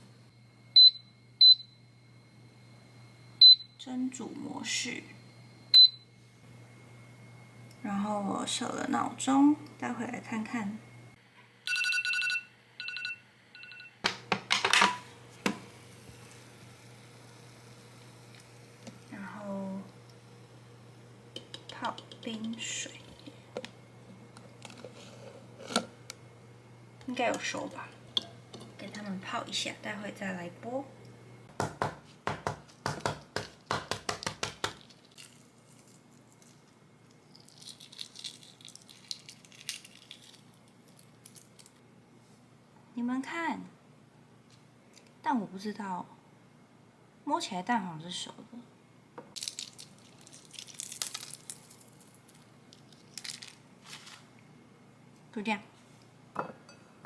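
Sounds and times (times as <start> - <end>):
electronic alarm beeping: 0.3 - 1.9, 5.8 - 6.1, 11.7 - 14.0
eggs and ice clinking in bowl: 19.9 - 26.1, 34.9 - 36.6, 37.2 - 41.7, 49.4 - 54.2.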